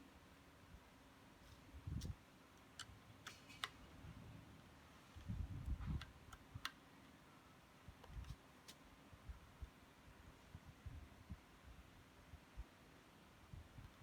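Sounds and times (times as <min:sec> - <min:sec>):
sharp clicks of small parts: 0:02.0 - 0:03.8.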